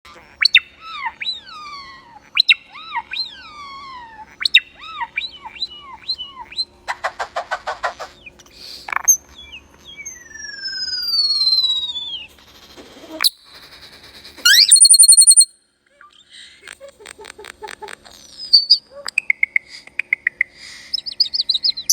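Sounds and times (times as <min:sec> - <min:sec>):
bird whistling calls: 0:00.4 - 0:12.4, 0:14.4 - 0:16.3, 0:18.2 - 0:21.9
harsh bird call: 0:14.5 - 0:15.5.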